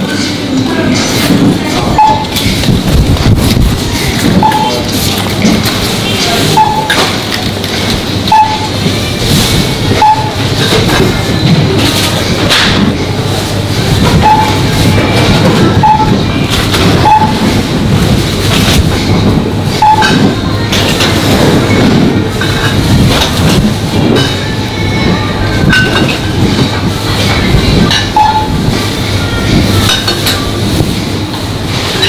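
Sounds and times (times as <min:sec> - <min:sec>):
short high beeps: 0:01.9 - 0:02.4, 0:04.4 - 0:04.9, 0:06.6 - 0:07.0, 0:08.3 - 0:08.7, 0:09.9 - 0:10.4, 0:14.2 - 0:14.7, 0:15.8 - 0:16.2, 0:17.0 - 0:17.4, 0:19.8 - 0:20.2, 0:28.1 - 0:28.5.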